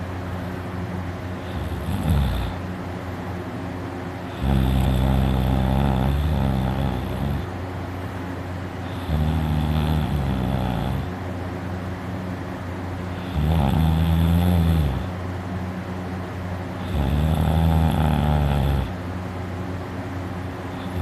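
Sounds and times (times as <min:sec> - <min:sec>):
person snoring loudly: 0:01.4 - 0:02.6, 0:04.3 - 0:07.5, 0:08.9 - 0:11.1, 0:13.2 - 0:15.1, 0:16.8 - 0:19.0, 0:20.8 - 0:21.0.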